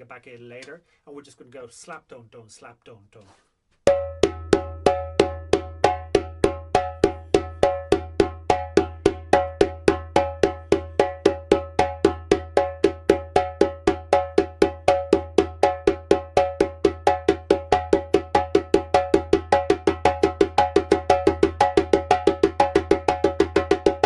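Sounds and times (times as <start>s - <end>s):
djembe played by hand: 3.9s - 24.0s.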